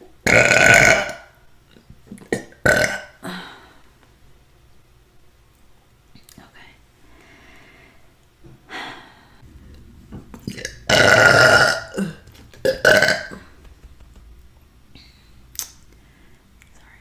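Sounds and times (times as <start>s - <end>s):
woman burping: 0.2s - 1.3s, 2.3s - 3.6s, 10.5s - 13.5s.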